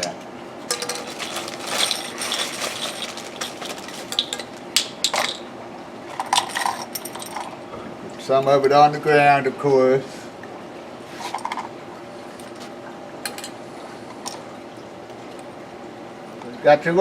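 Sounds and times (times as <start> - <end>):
toy pieces clicking and clattering: 1.1 - 5.4.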